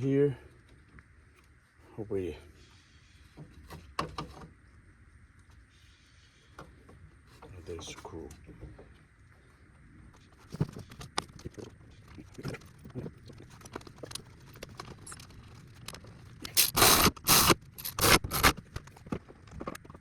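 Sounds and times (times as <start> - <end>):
metal parts scraping: 16.4 - 18.7.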